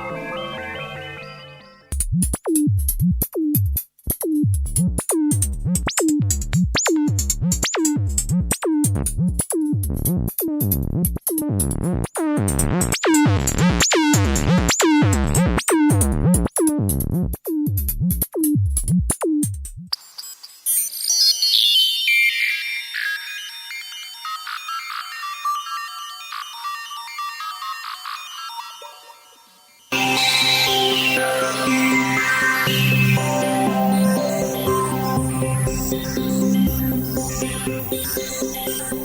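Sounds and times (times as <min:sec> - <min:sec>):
bright synth layer: 0:00.0 - 0:01.9, 0:28.0 - 0:39.0
electronic drum machine beat: 0:01.9 - 0:19.9, 0:29.9 - 0:39.0.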